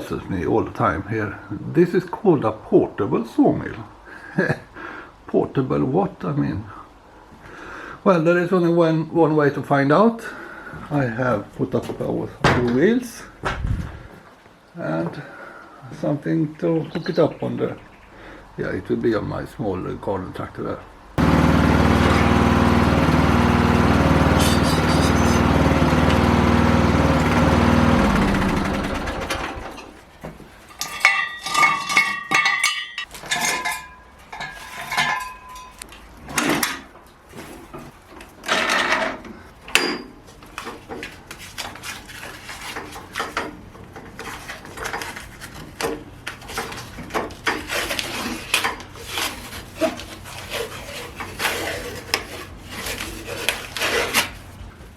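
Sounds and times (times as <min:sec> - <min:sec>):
small tractor engine running: 0:21.2 - 0:29.8
metal clanks and knocks: 0:29.3 - 0:35.8.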